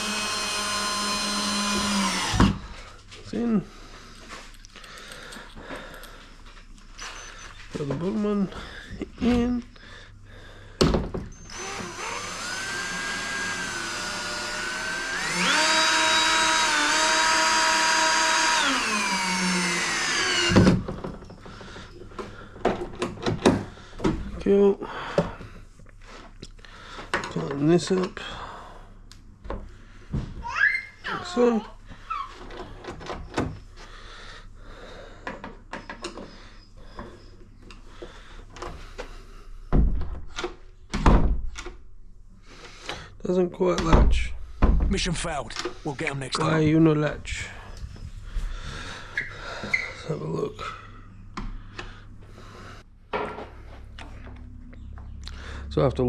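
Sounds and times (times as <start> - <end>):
power drill motor whine: 0.0 - 2.6, 11.4 - 20.8
door thumping against frame: 39.7 - 40.3.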